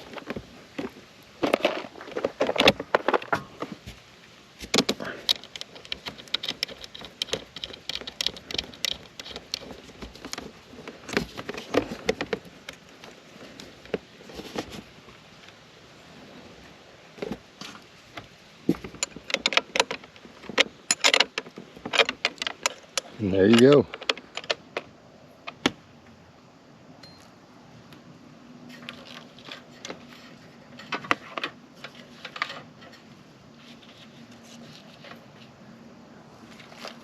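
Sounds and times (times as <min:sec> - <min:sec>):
metal tools clinking and rattling: 0:05.0 - 0:12.4, 0:18.7 - 0:24.9.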